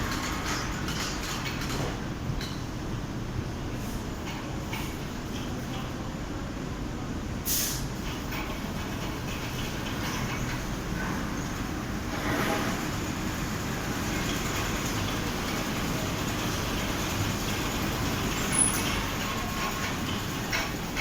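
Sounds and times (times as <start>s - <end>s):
fabric spreading machine running: 10.8s - 21.0s.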